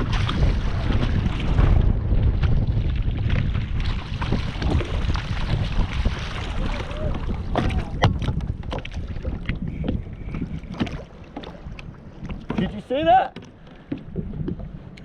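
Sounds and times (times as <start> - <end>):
wind buffeting microphone: 0.0 - 15.0
small knocks against kayak: 7.2 - 14.6.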